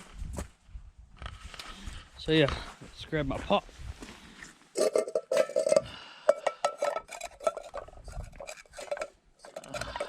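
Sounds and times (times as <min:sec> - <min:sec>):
metal cook pot clanking: 0:04.8 - 0:07.8.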